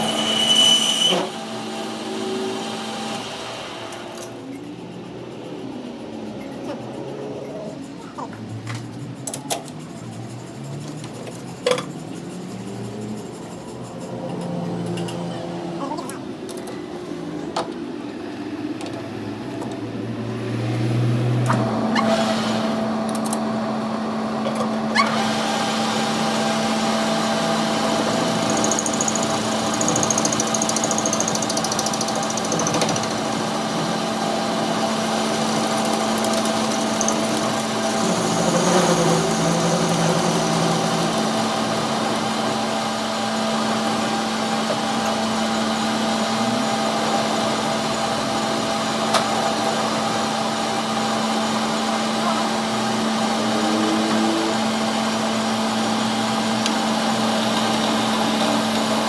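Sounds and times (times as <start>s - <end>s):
power tool humming and whirring: 24.6s - 59.0s.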